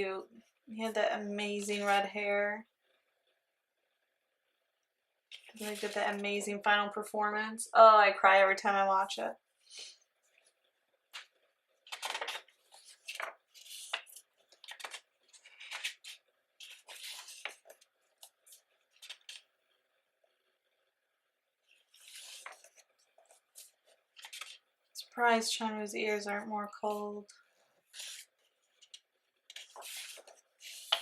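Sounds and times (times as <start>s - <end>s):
book pages rustling: 1.6s - 2.1s, 5.3s - 6.4s, 10.2s - 19.8s, 21.6s - 25.1s, 26.8s - 31.0s.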